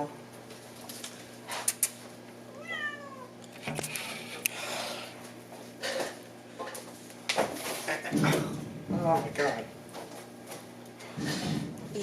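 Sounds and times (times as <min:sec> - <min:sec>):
cat meowing: 0:02.5 - 0:03.3.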